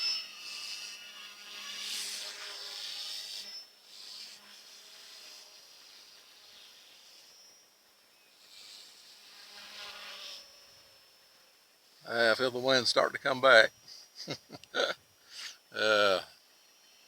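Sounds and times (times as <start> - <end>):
rc helicopter motor whine: 0.0 - 12.6.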